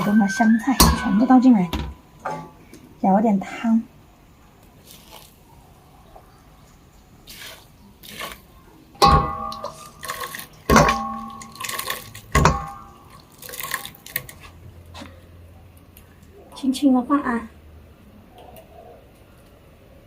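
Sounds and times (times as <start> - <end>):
ladle clinking on bowl rim: 0.0 - 2.4, 9.0 - 13.2
broth pouring and splashing: 4.6 - 14.6.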